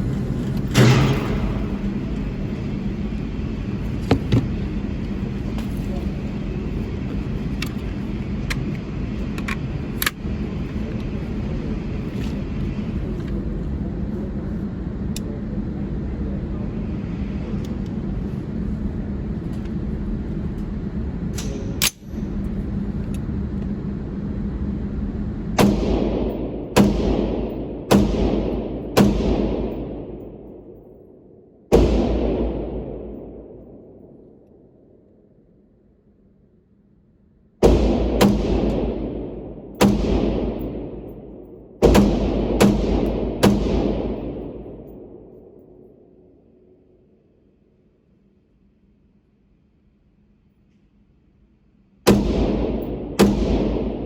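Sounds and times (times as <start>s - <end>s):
low rumble: 0.0s - 36.4s, 37.5s - 47.0s, 52.1s - 54.0s
rifle shots echoing: 25.6s - 30.8s, 31.7s - 34.4s, 37.6s - 45.9s, 52.1s - 54.0s.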